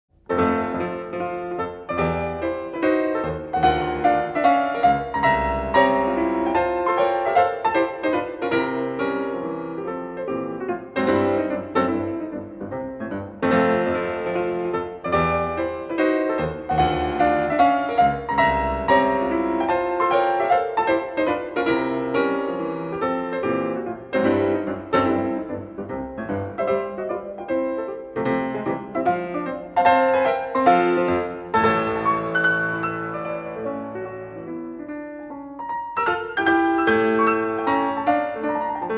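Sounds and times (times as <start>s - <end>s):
solo piano music: 0.1s - 38.9s.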